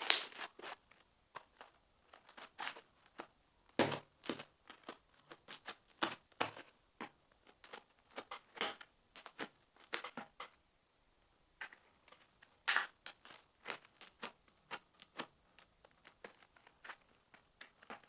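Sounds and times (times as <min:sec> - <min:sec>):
sticky slime crackles and pops: 0:00.0 - 0:00.4.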